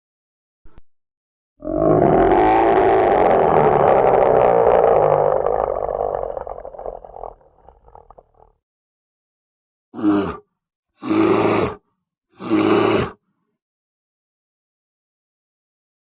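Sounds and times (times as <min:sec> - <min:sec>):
bear roaring: 0:01.6 - 0:08.4, 0:10.0 - 0:11.8, 0:12.4 - 0:13.2.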